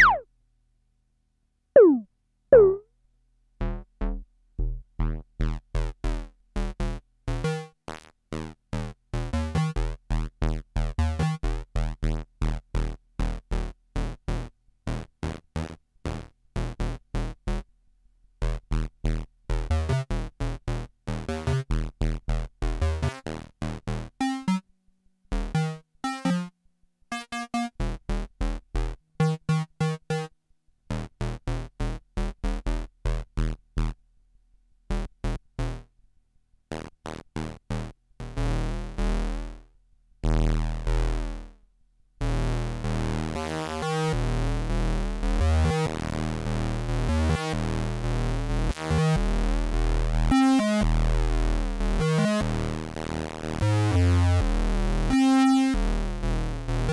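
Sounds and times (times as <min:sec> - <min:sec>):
synthesizer staccato notes: 0:00.0 - 0:00.2, 0:01.8 - 0:02.8.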